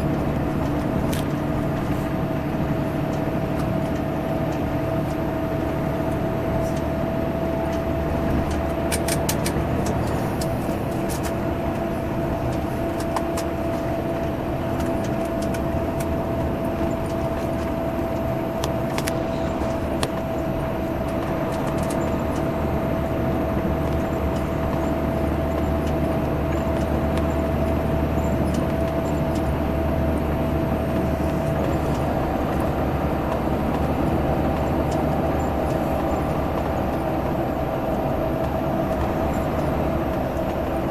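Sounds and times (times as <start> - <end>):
bus engine drone: 0.0 - 40.9
road noise: 0.0 - 40.9
steady high whine: 15.2 - 40.9.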